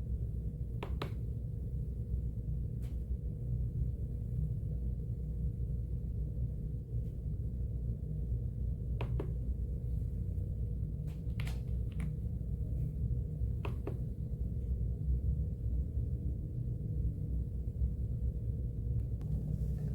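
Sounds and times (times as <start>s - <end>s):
steady low hum: 0.0s - 19.9s.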